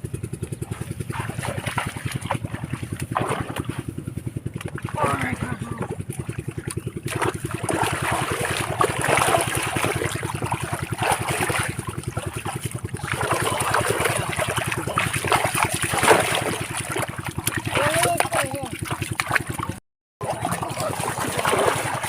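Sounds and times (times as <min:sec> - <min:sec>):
rapid low throbbing: 0:00.0 - 0:22.0
hands splashing in water: 0:00.6 - 0:22.0.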